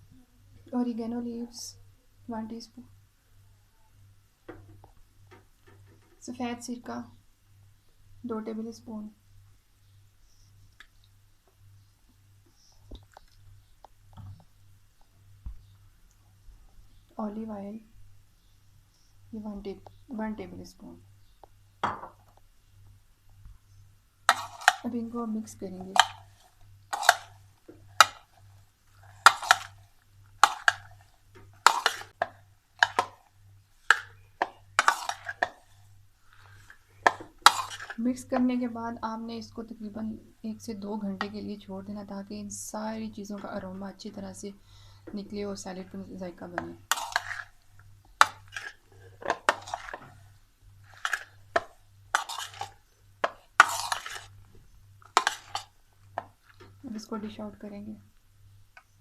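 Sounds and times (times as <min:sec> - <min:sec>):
spoon scraping a mixing bowl: 0:24.3 - 0:33.3, 0:33.9 - 0:38.6, 0:46.6 - 0:56.8
wet scrapes: 0:34.8 - 0:38.0, 0:48.2 - 0:51.4, 0:52.1 - 0:52.8, 0:53.6 - 0:54.4.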